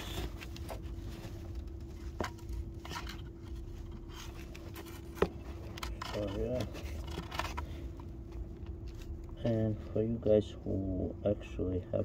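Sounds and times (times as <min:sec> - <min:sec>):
handling clicks and scrapes: 0:00.0 - 0:09.4
steady faint hum: 0:00.0 - 0:12.0.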